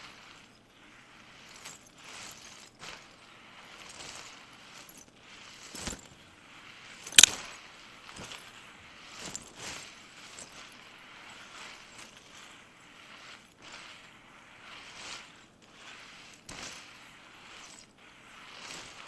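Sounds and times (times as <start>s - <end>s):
objects being handled: 7.0s - 7.4s
sharp loud click: 7.1s - 7.3s.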